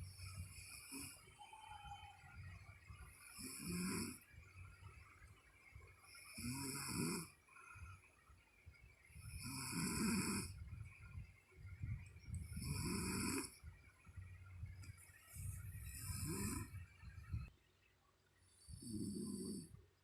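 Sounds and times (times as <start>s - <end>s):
quiet breathing: 0.0s - 17.6s, 18.3s - 20.0s
woman snoring: 0.1s - 1.9s, 3.3s - 4.2s, 6.2s - 7.4s, 9.2s - 10.6s, 12.4s - 13.6s, 15.4s - 16.8s, 18.7s - 19.8s.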